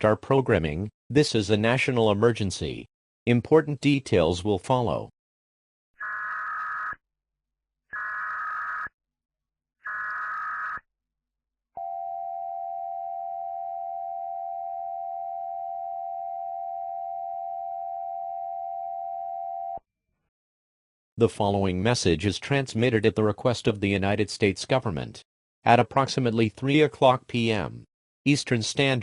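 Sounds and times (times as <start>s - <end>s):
harsh data bursts: 6.0s - 7.0s, 8.0s - 8.9s, 9.9s - 10.8s.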